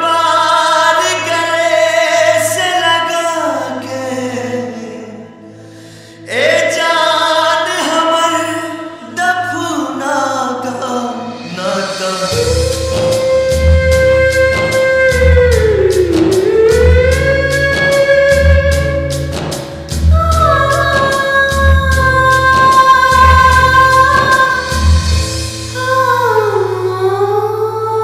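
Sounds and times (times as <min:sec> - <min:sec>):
person singing sad song: 0:00.0 - 0:28.0
deep bass: 0:12.3 - 0:27.9.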